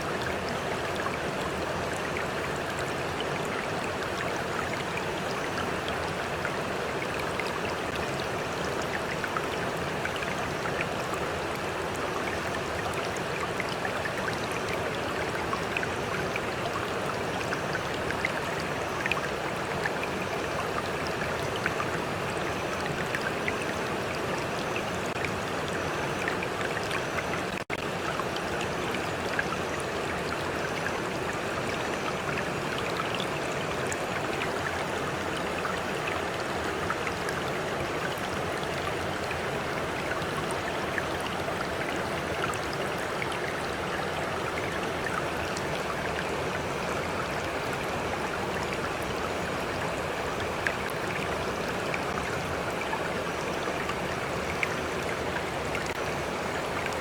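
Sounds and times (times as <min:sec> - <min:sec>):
stream of water flowing: 0:00.0 - 0:57.0.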